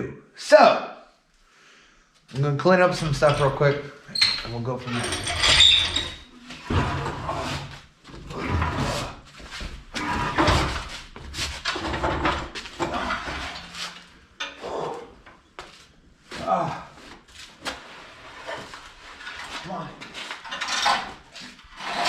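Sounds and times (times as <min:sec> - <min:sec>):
tools clattering and scraping: 0:02.9 - 0:14.7, 0:17.7 - 0:22.0.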